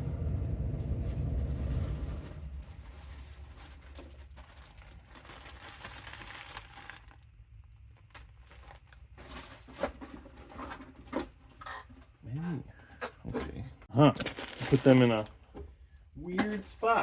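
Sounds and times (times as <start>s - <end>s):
plastic bags crinkling and rustling: 1.7s - 11.4s, 14.0s - 15.6s.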